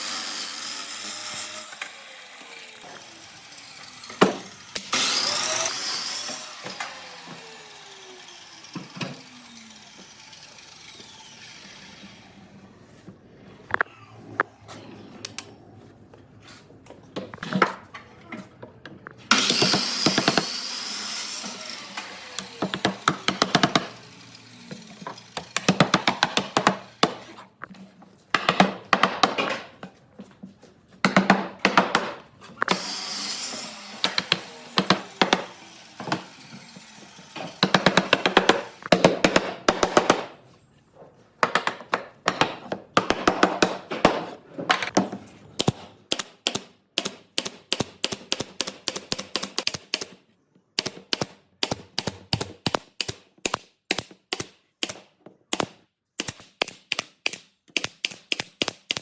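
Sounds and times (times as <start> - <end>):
loud rushing tool noise: 0.0 - 12.6, 19.3 - 26.2
rapid tool clicks and taps: 21.9 - 27.2, 34.0 - 36.3, 37.5 - 40.3, 45.6 - 50.2, 50.8 - 59.0.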